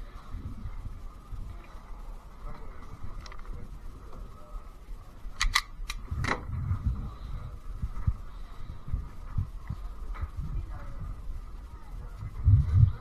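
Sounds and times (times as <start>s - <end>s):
sharp clicks: 5.3s - 6.4s
rustling on microphone: 6.0s - 13.0s.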